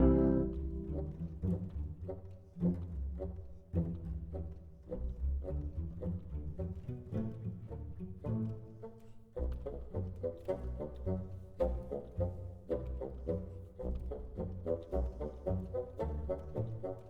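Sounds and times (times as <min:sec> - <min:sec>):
instrumental music with low strings: 0:00.0 - 0:17.0.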